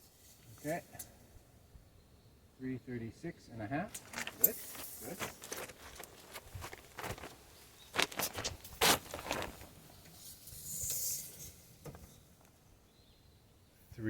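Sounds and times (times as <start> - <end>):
rustling handling sounds: 3.9 - 11.2.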